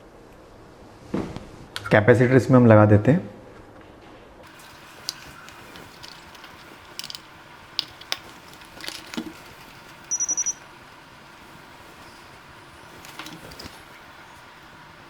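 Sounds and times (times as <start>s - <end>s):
small clicks and handling noises: 4.4s - 15.0s
high rapidly pulsed beep: 10.1s - 10.6s.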